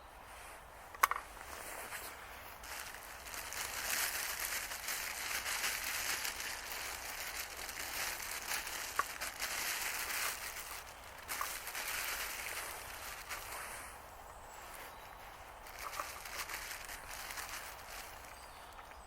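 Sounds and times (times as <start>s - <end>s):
rustling and crinkling: 0.3s - 19.0s.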